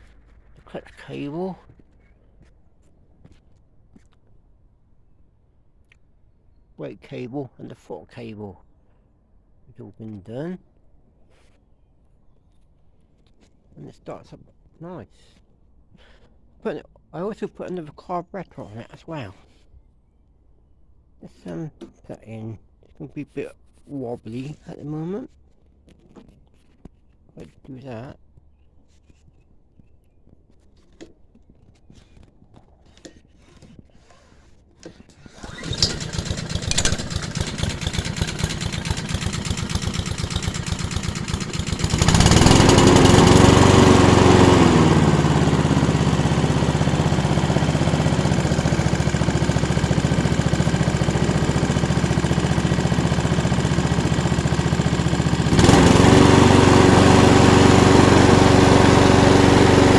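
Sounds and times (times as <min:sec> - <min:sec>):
lawnmower engine running: 0:35.2 - 0:59.9.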